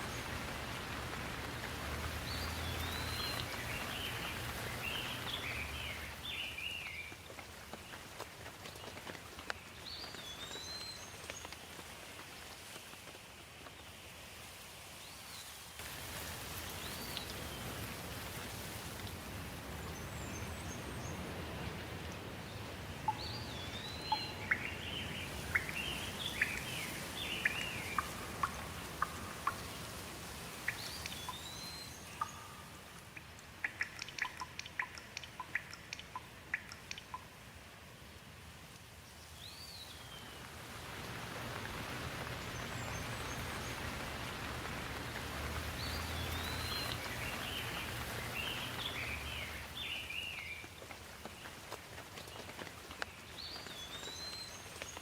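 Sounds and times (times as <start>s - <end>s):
birds chirping: 0.0s - 7.2s, 19.8s - 37.3s, 41.2s - 50.7s
steady rain: 0.0s - 55.0s
drip-like ticks: 23.0s - 37.6s, 38.6s - 38.9s.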